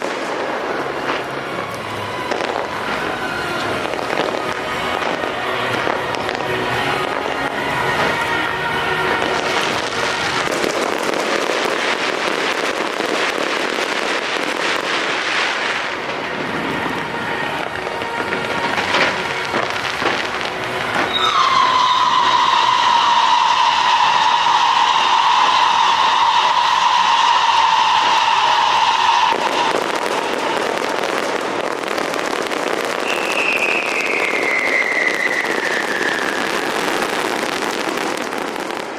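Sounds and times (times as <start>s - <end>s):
fireworks crackling: 0.0s - 38.9s
whistle sliding down in pitch: 21.1s - 29.9s, 33.0s - 36.8s.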